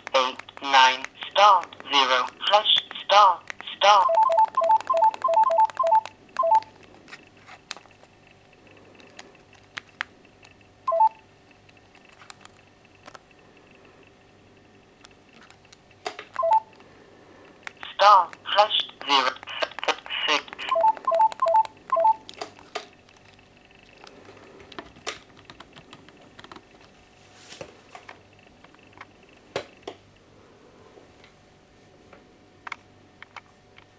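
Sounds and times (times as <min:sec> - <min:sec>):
phone keypad beeps: 0:03.8 - 0:06.7, 0:10.9 - 0:11.2, 0:16.4 - 0:16.7, 0:20.0 - 0:22.3.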